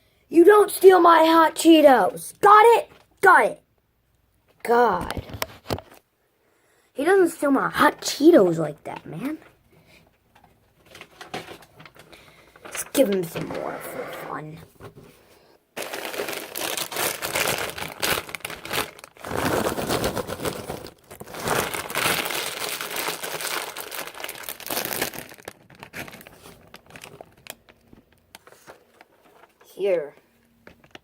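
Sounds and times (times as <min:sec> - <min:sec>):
plastic snack bag crinkling: 0:09.2 - 0:14.2, 0:15.8 - 0:31.0.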